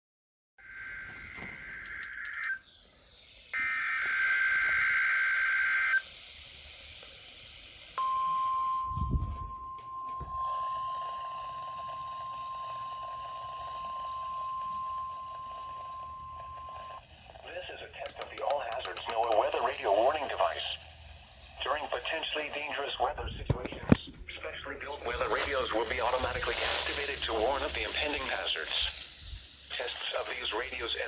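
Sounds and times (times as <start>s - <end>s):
weather radio alarm tone: 0.6s - 2.7s, 3.6s - 6.1s, 8.0s - 20.9s
screeching data bursts: 0.6s - 6.1s, 12.0s - 23.2s, 24.8s - 31.0s.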